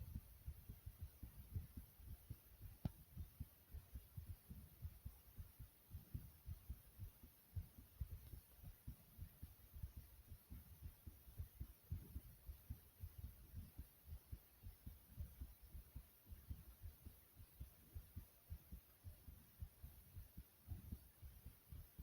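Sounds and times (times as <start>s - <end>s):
fast soft heartbeat: 0.0s - 22.0s.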